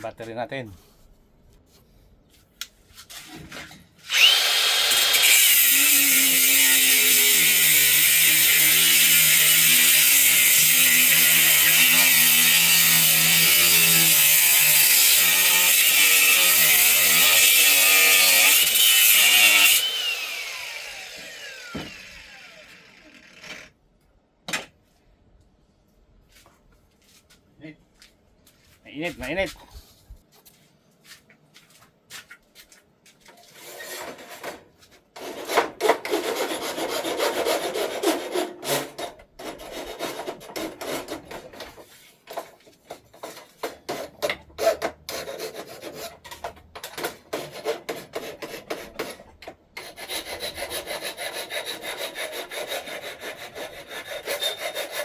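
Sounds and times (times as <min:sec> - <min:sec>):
power tool motor whining: 0:04.1 - 0:23.7.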